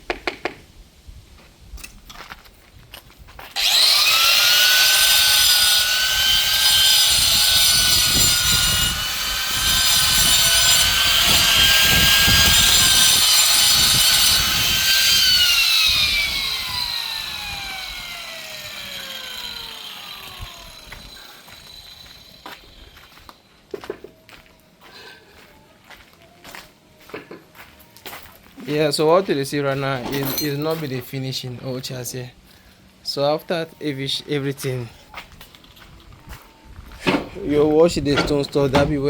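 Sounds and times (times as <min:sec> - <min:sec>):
angle grinder cutting stone: 0:03.6 - 0:23.2.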